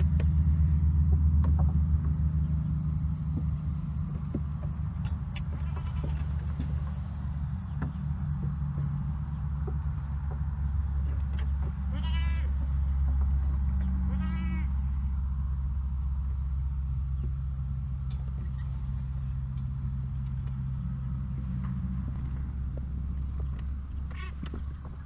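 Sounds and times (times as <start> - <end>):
low machine hum: 0.0 - 25.0
goat or sheep bleating: 5.4 - 7.0, 11.7 - 12.6, 13.9 - 14.9.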